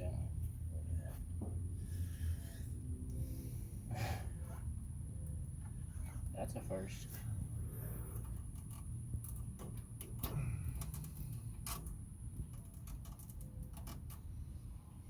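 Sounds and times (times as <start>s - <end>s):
low steady rumble: 0.0s - 15.0s.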